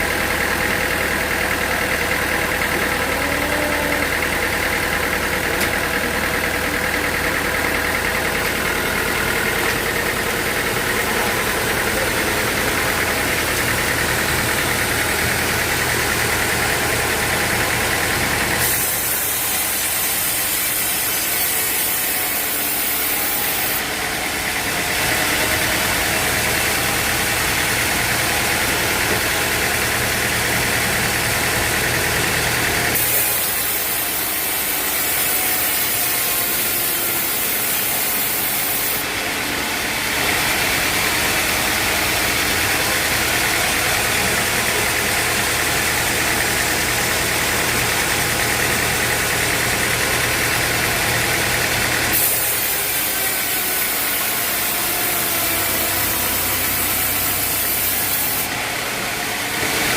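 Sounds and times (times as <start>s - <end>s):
engine humming: 0.0s - 19.8s.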